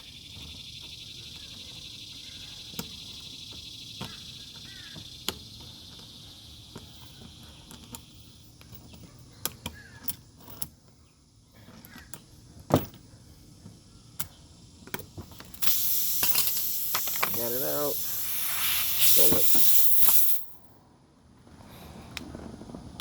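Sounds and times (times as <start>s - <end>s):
hand tools clicking and tapping: 14.2s - 20.6s
air hissing out of tire: 15.6s - 20.7s.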